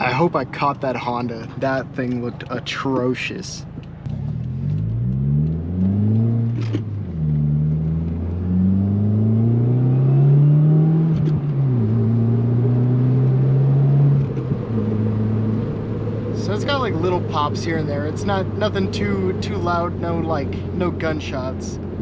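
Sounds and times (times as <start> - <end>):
car engine accelerating through gears: 4.0 - 21.2.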